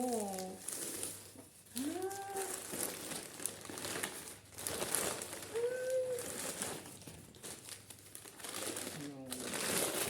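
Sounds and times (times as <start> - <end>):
packaging crinkling and rustling: 0.0 - 10.0
pitched hums or coos: 1.7 - 2.6, 5.5 - 6.4.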